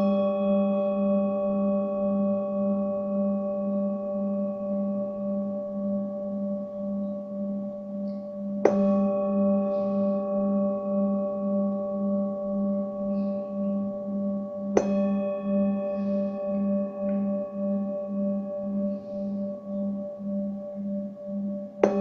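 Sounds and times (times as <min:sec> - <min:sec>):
singing bowl ringing: 0:00.0 - 0:22.0
singing bowl strike: 0:08.0 - 0:22.0.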